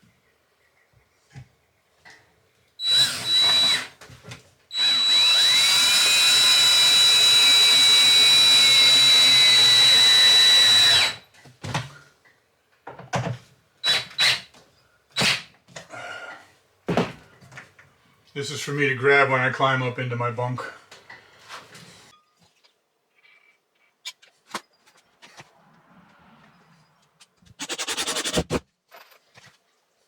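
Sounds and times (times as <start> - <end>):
power drill whining: 2.8 - 4.0, 4.7 - 11.2, 13.8 - 14.5.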